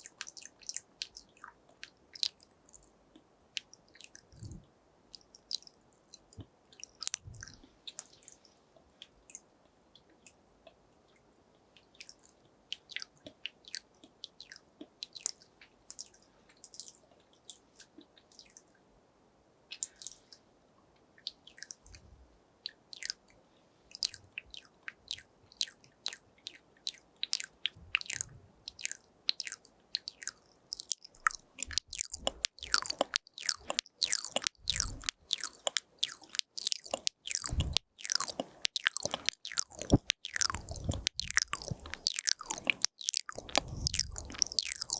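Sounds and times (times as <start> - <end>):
wet tongue clicks: 0.0 - 8.4, 11.8 - 17.6, 21.2 - 22.0, 22.7 - 23.2, 24.0 - 44.9
mouth smacks: 24.0 - 44.9.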